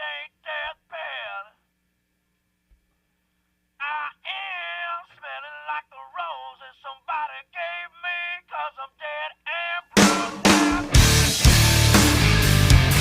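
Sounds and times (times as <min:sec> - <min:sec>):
processed sung vocal: 0:00.0 - 0:01.6, 0:03.8 - 0:11.2.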